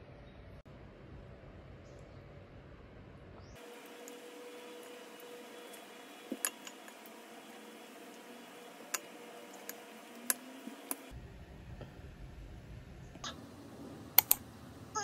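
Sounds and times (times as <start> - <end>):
steady hiss: 3.6 - 12.8
light desk clicks and taps: 14.2 - 14.4.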